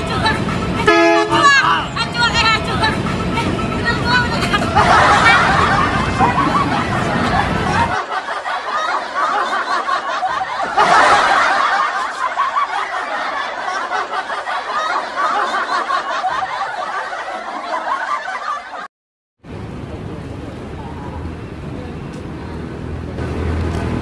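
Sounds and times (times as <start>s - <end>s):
people giggling and snickering: 2.8s - 18.9s.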